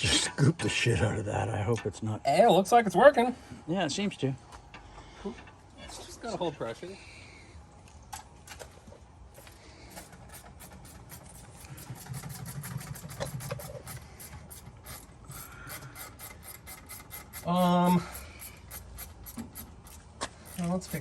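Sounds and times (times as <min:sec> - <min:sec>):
rapid mechanical clicking: 0:09.9 - 0:21.0.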